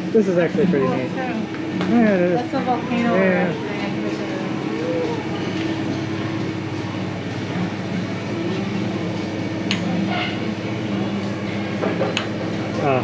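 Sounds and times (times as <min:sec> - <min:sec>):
low mechanical hum: 0:00.0 - 0:13.0
faint voices: 0:00.6 - 0:07.0.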